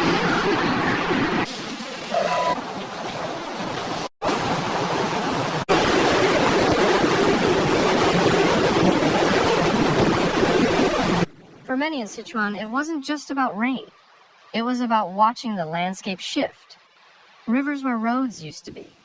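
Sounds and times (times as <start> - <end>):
floodwater rushing: 0.0 - 14.6.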